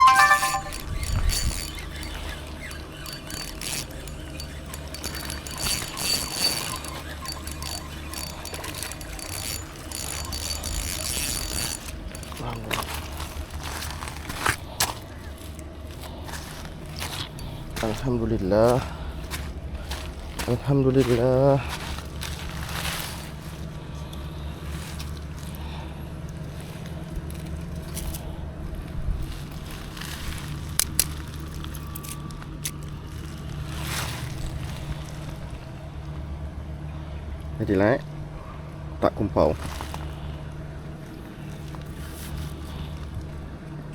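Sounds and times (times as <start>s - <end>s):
fishing reel clicking: 0.7s - 12.6s.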